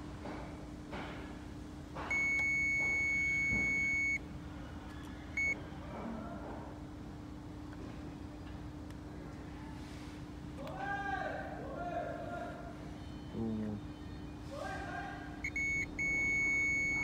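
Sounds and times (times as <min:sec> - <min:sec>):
steady low hum: 0:00.0 - 0:17.0
electronic beeps: 0:02.1 - 0:04.2, 0:05.4 - 0:05.6, 0:15.4 - 0:17.0.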